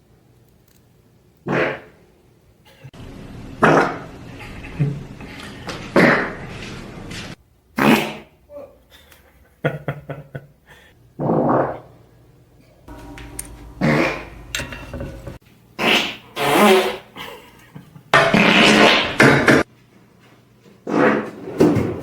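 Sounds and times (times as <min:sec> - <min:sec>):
farts: 0:01.5 - 0:02.0, 0:03.6 - 0:04.1, 0:05.9 - 0:06.5, 0:07.8 - 0:08.3, 0:11.2 - 0:11.9, 0:13.8 - 0:14.3, 0:15.8 - 0:17.1, 0:18.2 - 0:19.6, 0:20.8 - 0:21.8.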